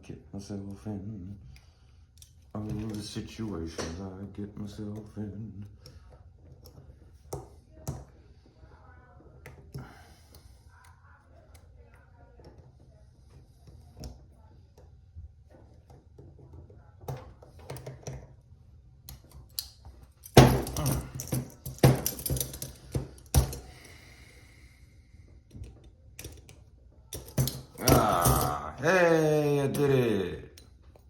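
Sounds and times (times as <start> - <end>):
metal rattling and clinking: 19.1 - 23.8, 27.1 - 28.9.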